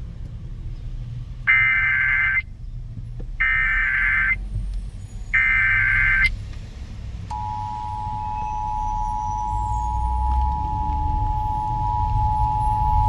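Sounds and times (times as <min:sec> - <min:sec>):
two-tone alert signal: 0:07.3 - 0:13.0.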